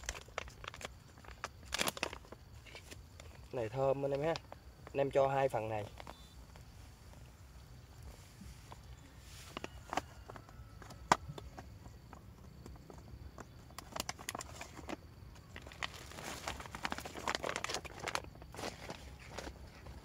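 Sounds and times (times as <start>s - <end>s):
plastic packet crinkling: 0.0s - 3.4s, 13.8s - 20.0s.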